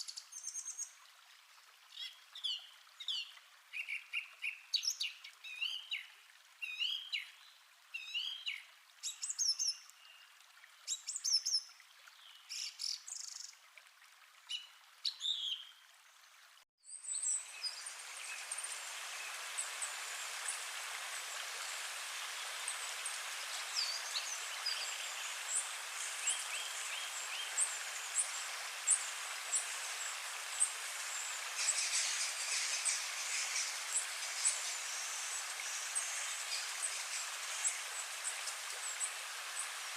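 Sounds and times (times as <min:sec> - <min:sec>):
gentle stream rushing: 0:00.0 - 0:39.9
birds singing and chirping: 0:22.6 - 0:39.2.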